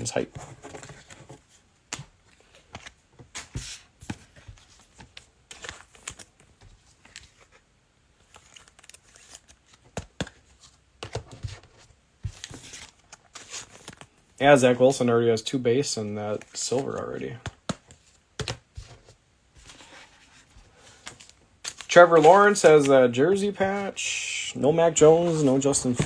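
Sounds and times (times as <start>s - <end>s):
card wrappers crinkling and tearing: 4.8s - 7.6s, 8.2s - 10.7s, 12.3s - 14.3s, 16.3s - 18.6s, 19.6s - 26.0s.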